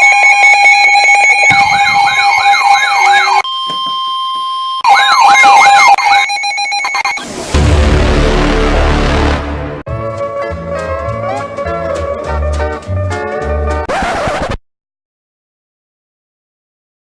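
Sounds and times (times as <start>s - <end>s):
fast whooping siren: 0.0s - 3.5s, 4.8s - 7.3s
harsh two-tone alarm: 0.0s - 7.7s.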